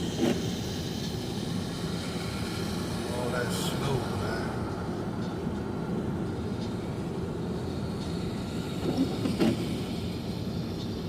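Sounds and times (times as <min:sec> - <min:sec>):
tyres on snowy road from inside: 0:00.0 - 0:11.0.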